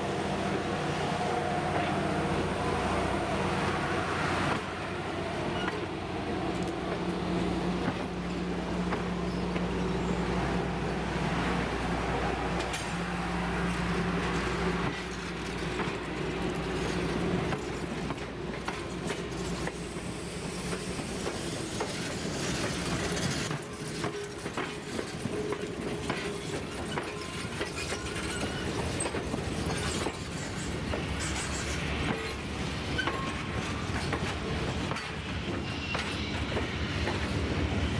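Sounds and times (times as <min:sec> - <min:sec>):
train low drone: 0:00.0 - 0:37.9
wheels clicking over rail joints: 0:13.7 - 0:37.4.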